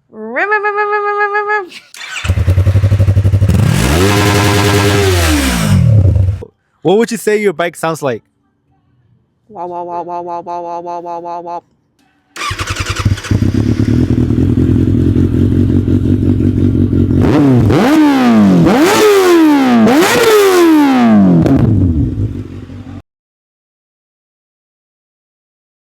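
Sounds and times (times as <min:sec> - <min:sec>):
motorcycle engine starting and revving: 0:01.9 - 0:06.4, 0:12.4 - 0:23.0.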